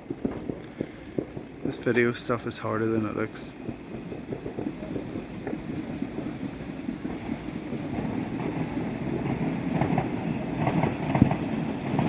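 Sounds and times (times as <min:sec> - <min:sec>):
distant fireworks crackling: 0:00.0 - 0:12.0.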